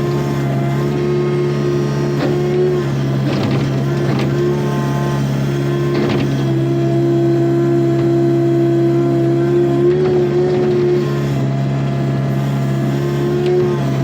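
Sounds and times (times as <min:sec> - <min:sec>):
diesel engine running: 0:00.0 - 0:14.0
hydraulic whine: 0:00.0 - 0:14.0.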